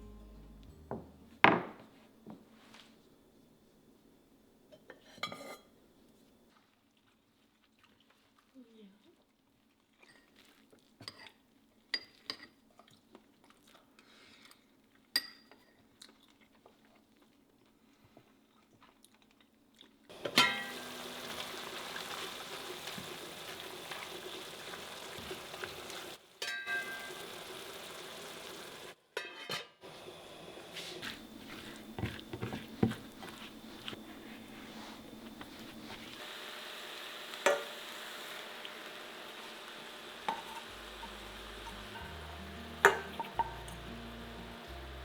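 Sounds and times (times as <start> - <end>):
steady hiss with low hum: 29.8 - 36.4, 37.0 - 45.0
utensils clicking and tapping: 37.1 - 44.6.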